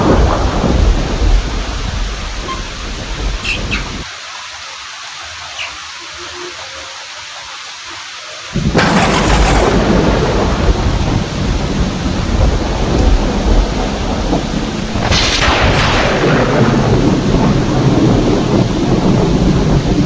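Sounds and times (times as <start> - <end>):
loud thunderclap: 0.0 - 4.1, 8.6 - 20.0
thunder rumbling: 0.0 - 4.6, 8.5 - 20.0
steady rain hiss: 0.0 - 20.0.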